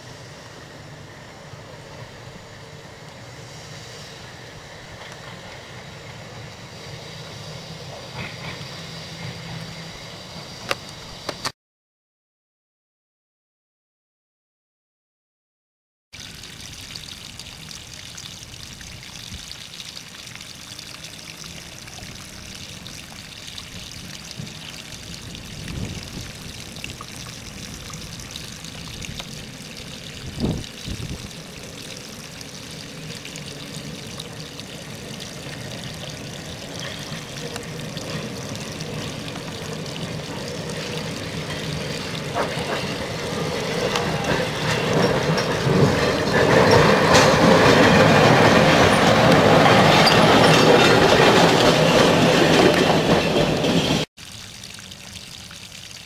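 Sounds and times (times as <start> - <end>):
trolley car rolling on rails: 0.0 - 11.5, 31.4 - 54.1.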